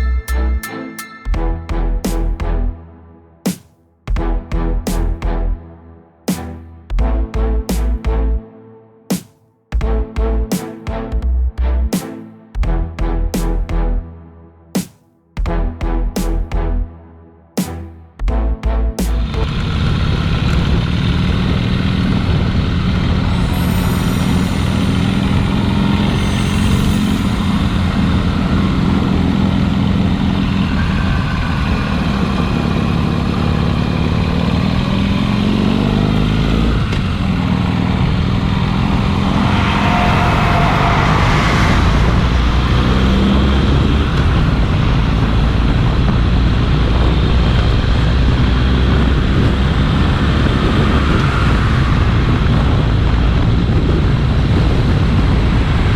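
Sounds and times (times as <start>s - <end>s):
motorcycle engine running: 19.1s - 23.3s, 27.5s - 39.0s
wind rumble on microphone: 19.2s - 35.3s, 36.6s - 55.9s.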